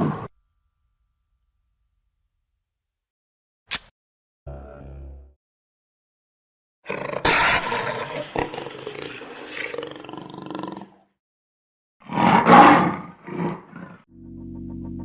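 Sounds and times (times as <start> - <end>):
big cat roaring: 6.9 - 11.0, 12.0 - 14.1.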